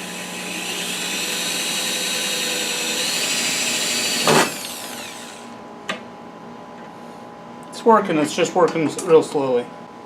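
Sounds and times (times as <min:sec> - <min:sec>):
power drill driving screw into steel: 0:00.6 - 0:05.5.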